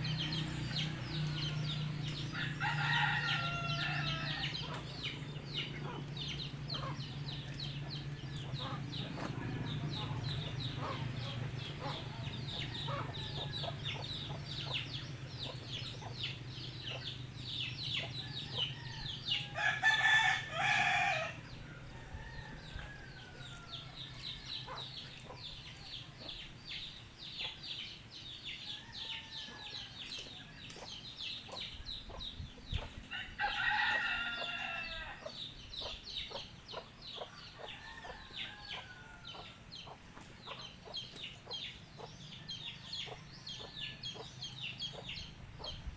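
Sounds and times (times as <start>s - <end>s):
chickens clucking: 0.0s - 45.9s
rooster crowing: 0.2s - 4.8s, 18.1s - 24.8s, 28.6s - 30.2s, 33.1s - 35.4s, 37.7s - 39.6s.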